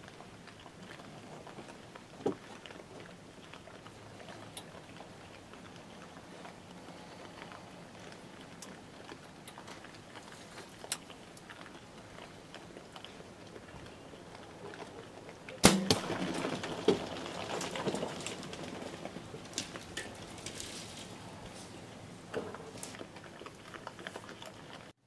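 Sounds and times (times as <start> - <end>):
hogs scrambling away: 0.0 - 24.9
hogs crunching while feeding: 0.0 - 25.0
bow string crack and arrow strike: 15.6 - 16.6.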